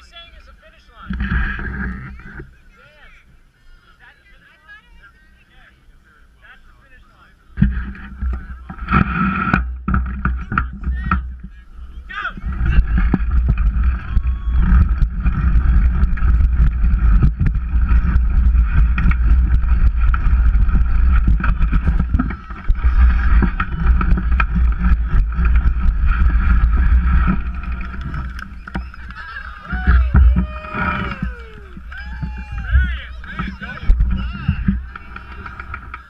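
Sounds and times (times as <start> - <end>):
wind on microphone: 7.6 - 36.0
mini bike engines revving high: 12.1 - 36.0.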